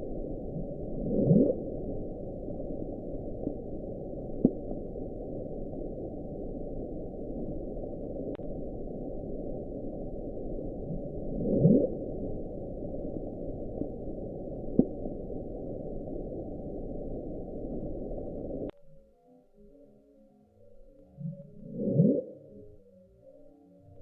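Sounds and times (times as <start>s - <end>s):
dull ocean hiss: 0.0s - 18.7s.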